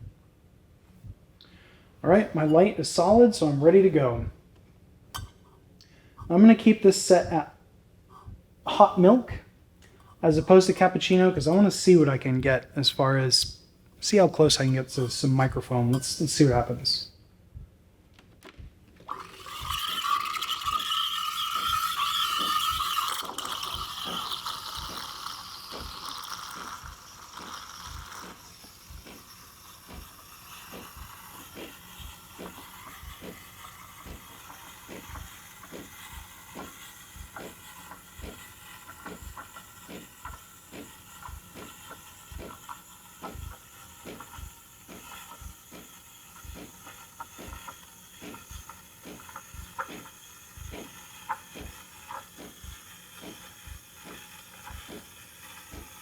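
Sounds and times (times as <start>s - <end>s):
steam wand hissing: 8.7s - 17.1s, 19.1s - 56.0s
pump clicking: 19.0s - 56.0s.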